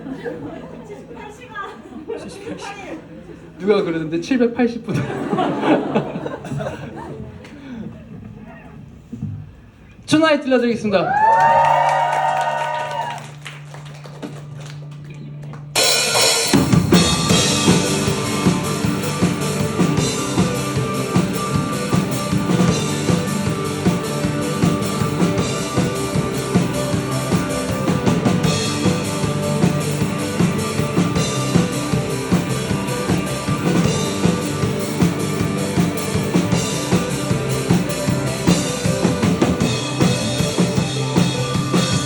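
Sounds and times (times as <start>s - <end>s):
rock band playing: 15.7s - 42.0s.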